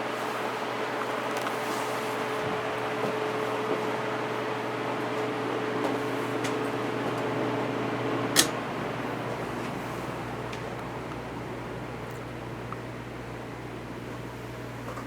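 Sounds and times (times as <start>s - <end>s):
ceiling fan whirring: 0.0s - 15.0s
motor hum: 2.4s - 15.0s.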